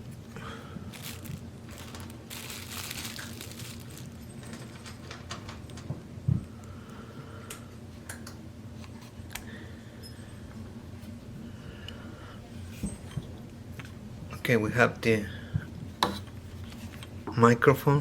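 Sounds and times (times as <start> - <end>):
plastic bag crinkling: 0.0 - 5.8.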